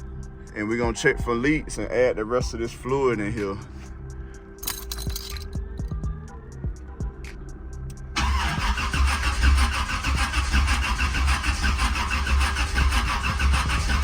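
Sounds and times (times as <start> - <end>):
starter motor cranking engine: 8.2 - 14.0.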